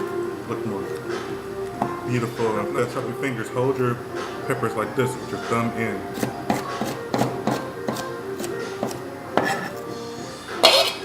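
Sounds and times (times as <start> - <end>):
knife chopping on cutting board: 6.2 - 9.7.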